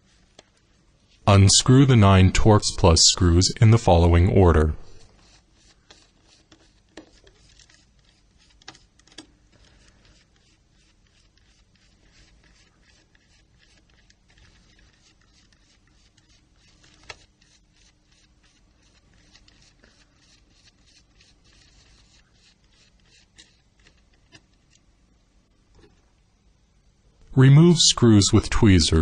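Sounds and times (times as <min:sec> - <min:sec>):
screwdriver ticking and scraping: 0:05.1 - 0:24.9.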